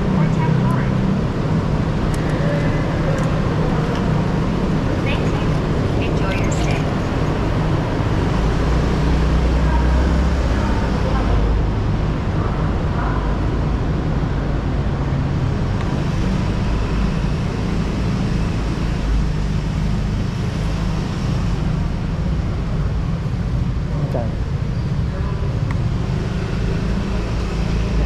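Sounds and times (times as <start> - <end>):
road and wind noise: 0.0 - 28.0
scooter engine running: 1.6 - 8.6.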